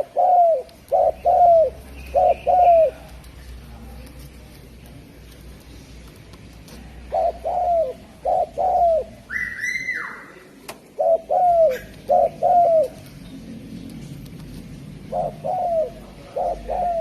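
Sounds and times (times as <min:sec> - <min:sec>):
dove cooing: 0:00.0 - 0:03.1, 0:07.0 - 0:10.1, 0:10.9 - 0:13.2, 0:15.0 - 0:17.0.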